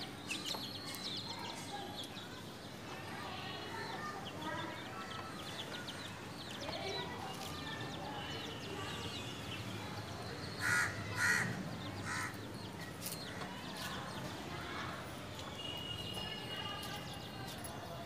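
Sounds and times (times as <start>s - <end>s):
birds chirping: 0.0s - 18.0s
harsh bird calls: 10.3s - 14.3s.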